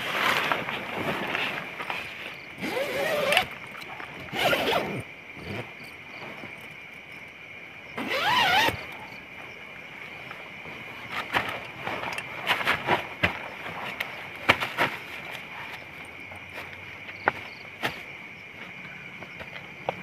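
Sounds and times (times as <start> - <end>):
tent zipper rasping: 2.6 - 3.6, 4.3 - 5.7, 8.0 - 8.9.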